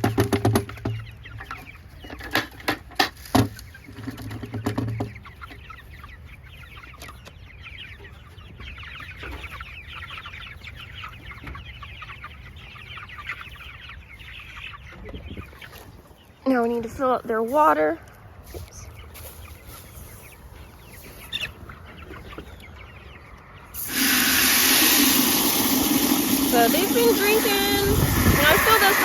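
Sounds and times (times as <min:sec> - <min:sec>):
feeder rattling and knocking: 0:00.0 - 0:01.1
chicks chirping and clucking: 0:00.0 - 0:29.0.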